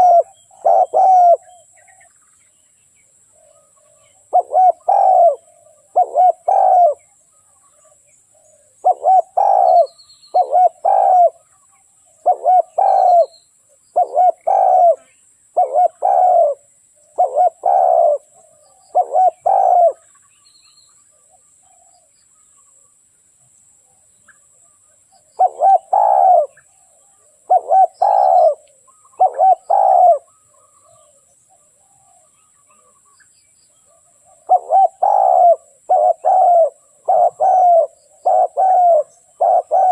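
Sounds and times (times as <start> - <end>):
dove cooing: 0.0 - 2.1, 3.3 - 7.2, 7.8 - 11.5, 12.1 - 20.1, 25.2 - 33.0, 33.8 - 39.9.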